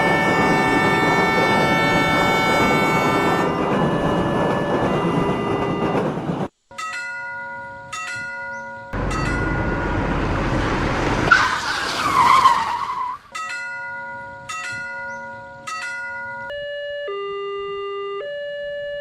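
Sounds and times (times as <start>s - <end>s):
railroad crossing bell ringing: 0.0s - 10.6s, 13.3s - 16.6s
loud rushing noise: 9.0s - 12.0s
high squealing screech: 11.2s - 13.3s.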